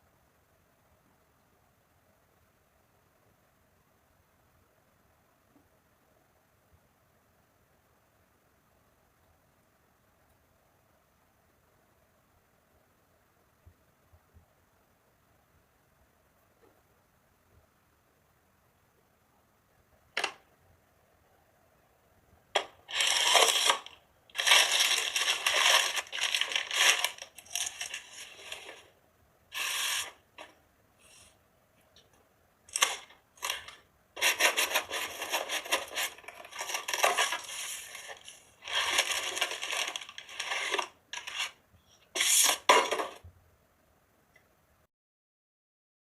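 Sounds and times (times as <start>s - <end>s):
scraping on a hard surface: 29.5s - 30.5s, 32.7s - 43.2s.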